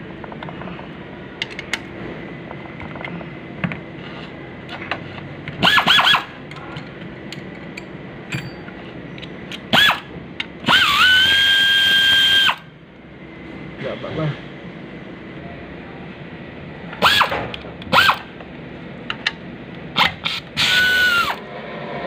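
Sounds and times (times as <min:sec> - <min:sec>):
pneumatic tool air motor whining: 0:05.6 - 0:06.4, 0:09.7 - 0:12.7, 0:17.0 - 0:18.3, 0:20.0 - 0:21.5
light metal clinks and taps: 0:06.5 - 0:08.8.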